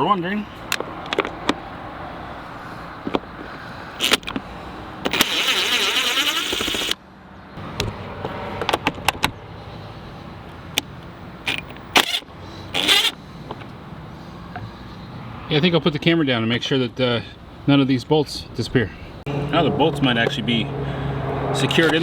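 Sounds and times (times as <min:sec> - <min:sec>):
metallic clicks and knocks: 0:04.0 - 0:04.4, 0:11.5 - 0:12.2
ratchet rasping: 0:04.0 - 0:07.0, 0:10.8 - 0:13.2, 0:21.7 - 0:22.0.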